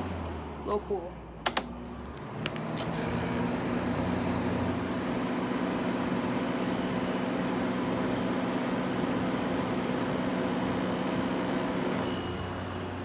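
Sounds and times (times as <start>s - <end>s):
air conditioner compressor humming: 0.0s - 13.0s
air conditioner switch clicks: 1.4s - 1.7s.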